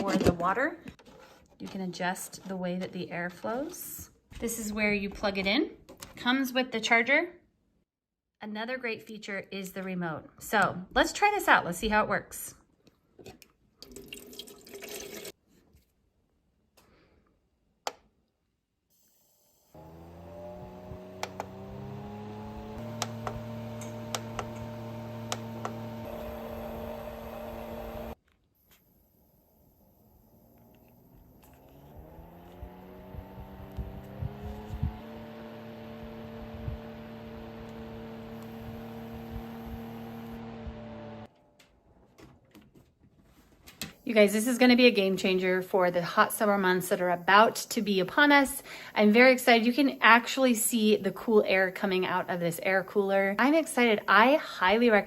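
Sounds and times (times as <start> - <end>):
fan motor humming: 19.7 - 28.2, 30.3 - 41.3
sharp control clicks: 21.2 - 26.0.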